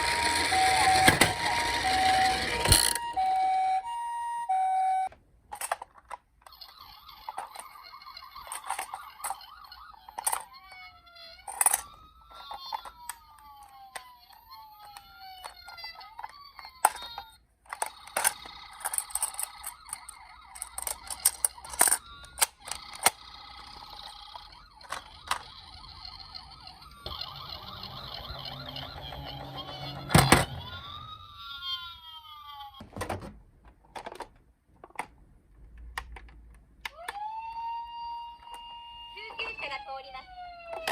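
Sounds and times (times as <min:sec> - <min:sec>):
toy electronic sirens: 0:00.0 - 0:05.2, 0:06.4 - 0:32.8, 0:36.9 - 0:40.9
clicks and knocks of toys handled: 0:05.4 - 0:25.9, 0:32.8 - 0:37.7, 0:40.6 - 0:40.9.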